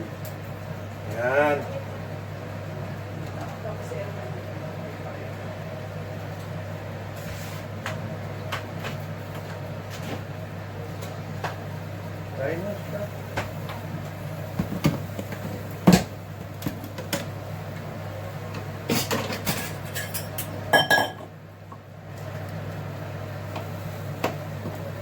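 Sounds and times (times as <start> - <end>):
plates and cutlery clinking: 18.9 - 21.3.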